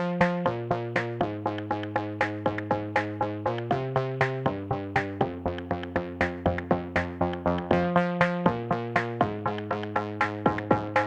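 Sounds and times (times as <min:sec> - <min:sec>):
synth chords: 0:00.0 - 0:11.0.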